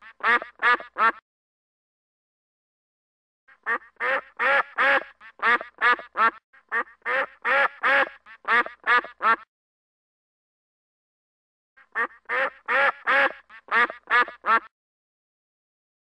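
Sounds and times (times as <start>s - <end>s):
duck quacking: 0.0s - 1.2s, 3.5s - 9.5s, 11.8s - 14.7s.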